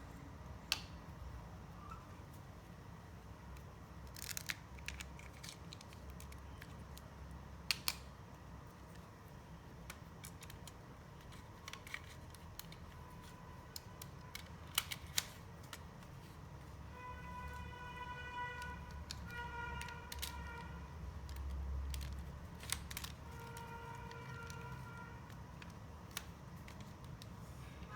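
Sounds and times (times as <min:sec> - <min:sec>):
plastic pieces clicking and tapping: 0:03.5 - 0:09.2, 0:09.8 - 0:16.3, 0:17.4 - 0:27.9.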